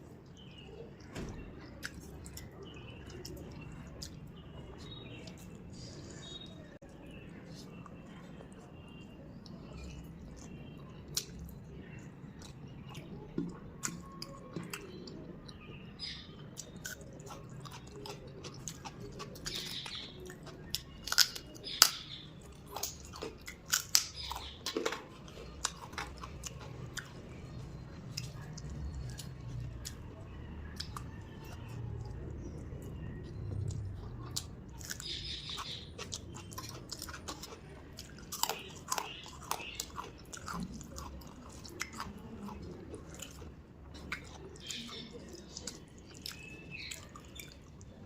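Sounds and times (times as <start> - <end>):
person chewing food: 1.7 - 48.0
crunching bites: 16.6 - 30.1, 33.2 - 47.6.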